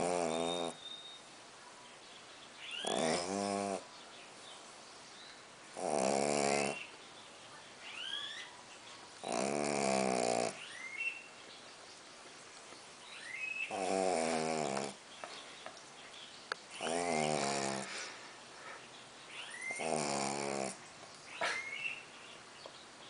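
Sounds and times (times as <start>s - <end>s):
dog snoring: 0.0s - 0.8s, 2.8s - 3.9s, 5.8s - 6.9s, 9.2s - 10.6s, 13.7s - 15.0s, 16.8s - 18.0s, 19.6s - 20.8s.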